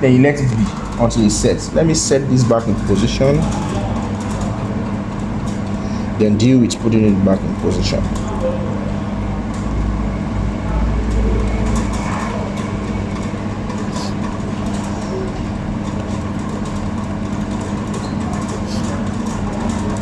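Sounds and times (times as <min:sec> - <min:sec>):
fan motor hum: 0:00.0 - 0:20.0
hot air blowing: 0:13.7 - 0:14.3.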